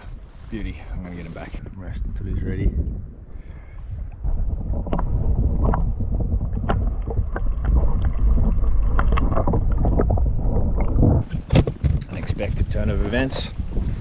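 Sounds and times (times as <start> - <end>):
wind buffeting microphone: 0.0 - 14.0
paddle and water splashes: 3.3 - 14.0.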